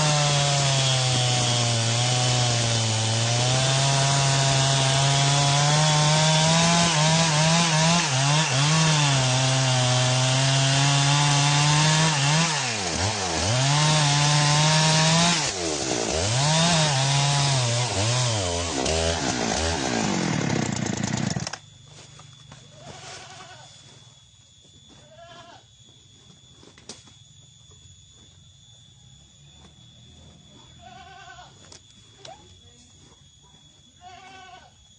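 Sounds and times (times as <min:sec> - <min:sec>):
chainsaw cutting wood: 0:00.0 - 0:21.7.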